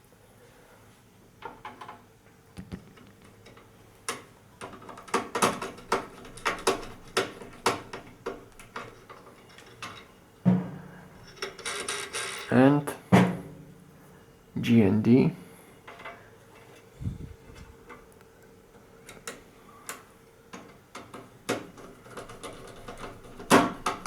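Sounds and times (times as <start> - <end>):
sharp clicks and knocks: 2.6 - 12.4, 20.5 - 24.0.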